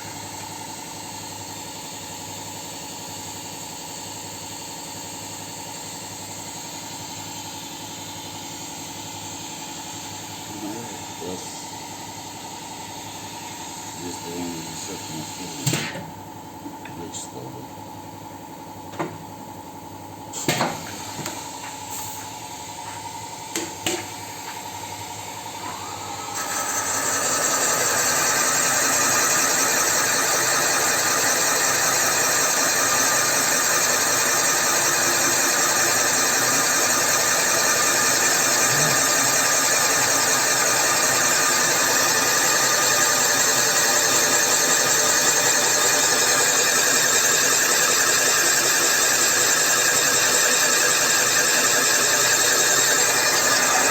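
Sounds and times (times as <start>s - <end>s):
machine tool whining: 10.1s - 16.1s, 23.6s - 53.9s.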